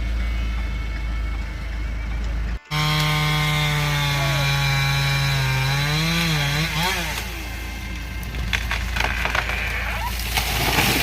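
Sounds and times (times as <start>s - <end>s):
chainsaw running at high speed: 2.6s - 8.1s.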